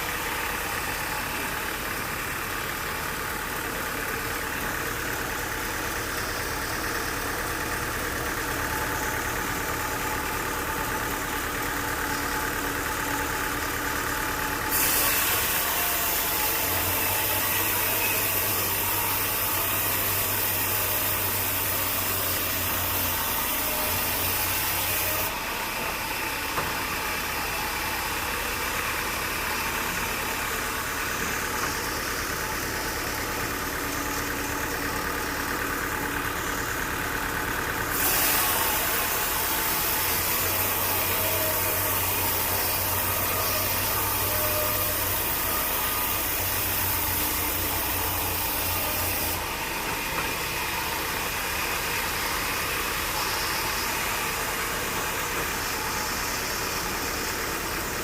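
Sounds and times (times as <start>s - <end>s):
sawmill machinery humming: 0.0s - 58.0s
loud hiss: 14.6s - 25.2s, 37.9s - 49.3s.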